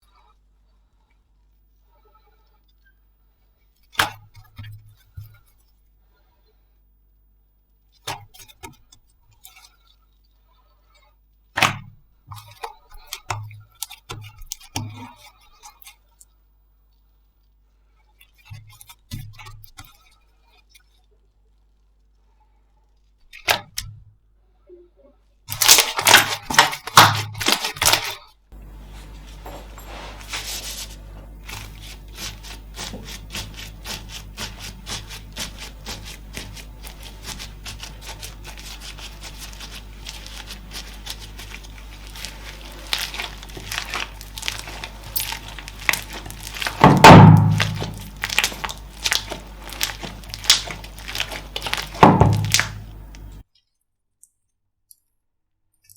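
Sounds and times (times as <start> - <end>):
slime crackling and popping: 25.5 - 28.2, 31.4 - 53.4
squishy slime burst: 25.5 - 28.2, 31.4 - 53.4.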